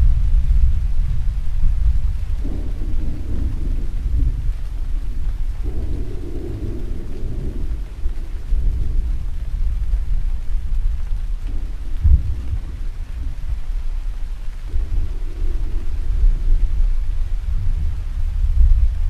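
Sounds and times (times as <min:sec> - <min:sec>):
deep rolling thunder: 0:00.0 - 0:19.0
steady rain: 0:00.0 - 0:19.0.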